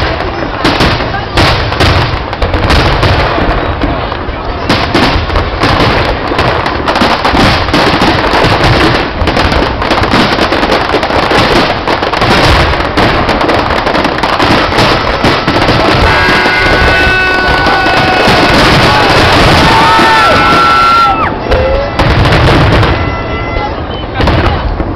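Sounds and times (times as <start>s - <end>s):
fireworks bangs and crackles: 0.0s - 24.9s.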